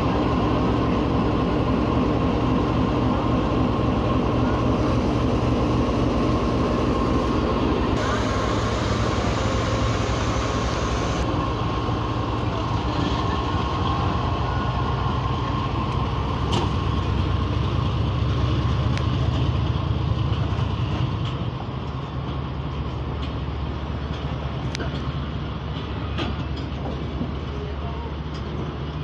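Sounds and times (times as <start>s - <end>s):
diesel locomotive engine rumbling: 0.0s - 29.0s.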